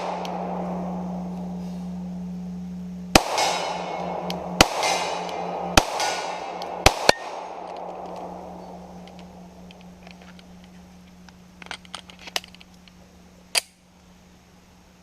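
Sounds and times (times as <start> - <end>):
bullet striking steel target: 0.0 - 1.6, 3.1 - 9.9
steady low hum: 0.0 - 15.0
pistol shots: 3.1 - 8.6.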